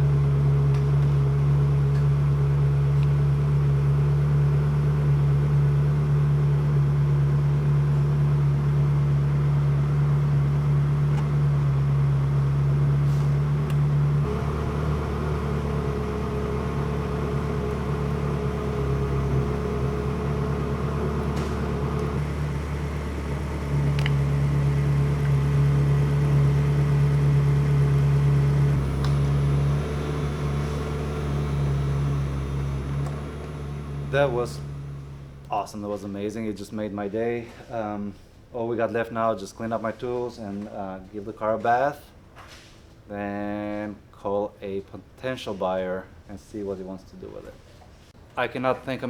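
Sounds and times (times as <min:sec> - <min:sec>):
hydraulic pump humming: 0:00.3 - 0:36.1.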